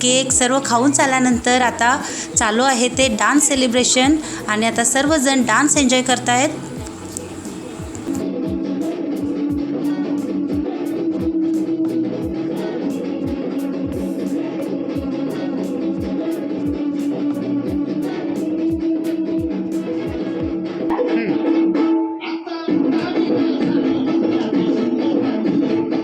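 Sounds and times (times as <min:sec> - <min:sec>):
dance music with guitar: 0:00.0 - 0:11.4.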